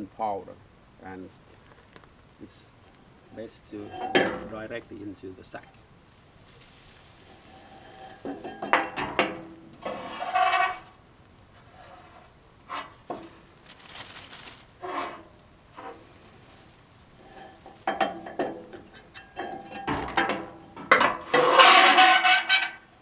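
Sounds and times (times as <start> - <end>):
metal scraping: 2.8 - 5.8, 6.6 - 23.0
metal parts clanking: 3.0 - 4.8, 7.4 - 10.9, 17.2 - 22.8.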